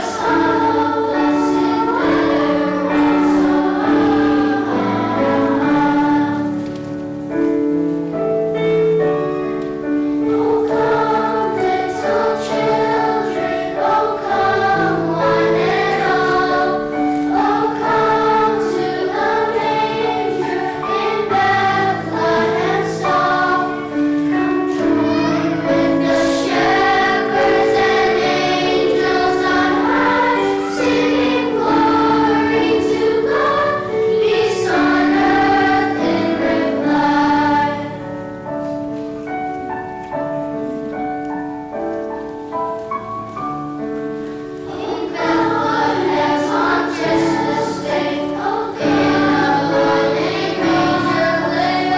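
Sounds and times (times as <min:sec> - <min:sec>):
children's choir singing: 0:00.0 - 0:51.9
piano accompaniment: 0:00.0 - 0:51.9.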